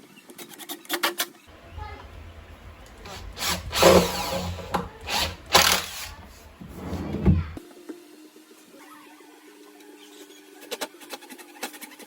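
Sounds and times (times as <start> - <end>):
power drill drilling plywood: 1.5 - 7.6.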